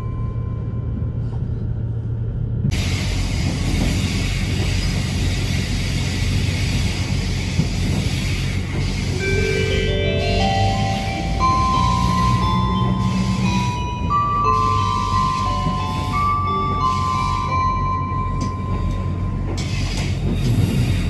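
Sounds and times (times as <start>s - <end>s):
train running rumble: 0.0s - 21.0s
announcement chime: 9.2s - 19.1s.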